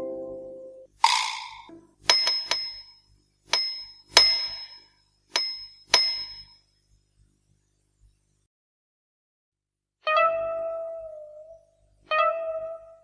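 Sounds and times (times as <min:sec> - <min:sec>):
small bell ringing: 0:01.1 - 0:06.6.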